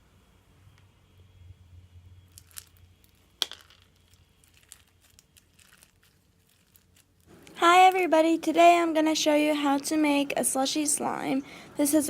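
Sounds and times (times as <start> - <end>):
faint crinkling: 2.3 - 8.1.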